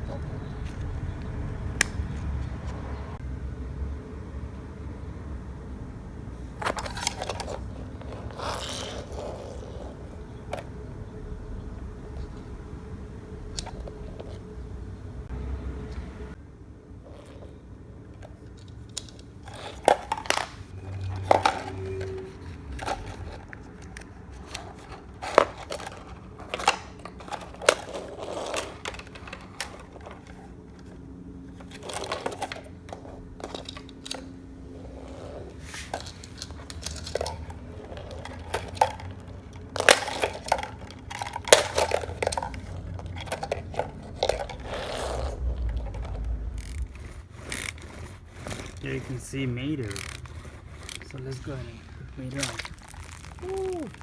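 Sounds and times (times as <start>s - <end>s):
toy cars clicking and scraping: 6.5s - 10.8s, 18.1s - 54.0s.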